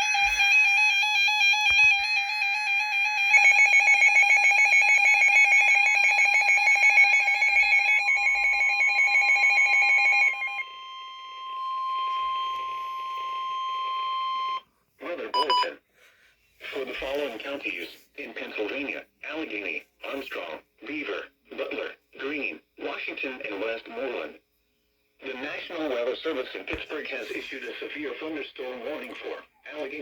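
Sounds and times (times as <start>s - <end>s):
steady alarm tone: 3.2s - 14.6s, 15.4s - 15.7s
buzzy wavering alarm tone: 3.3s - 14.6s.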